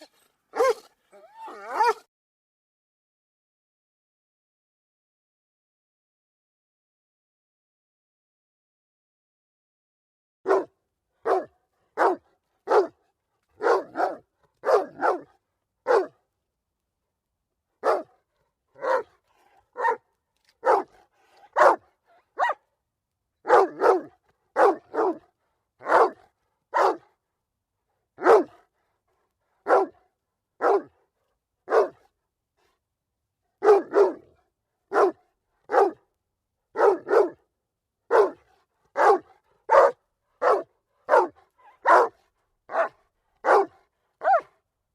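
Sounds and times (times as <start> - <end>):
dog barking: 0.0 - 2.1, 10.5 - 13.0, 13.6 - 16.2, 17.8 - 18.2, 18.8 - 22.6, 23.4 - 27.1, 28.2 - 28.7, 29.6 - 31.0, 31.7 - 32.1, 33.6 - 34.3, 34.9 - 36.0, 36.7 - 37.4, 38.1 - 44.6.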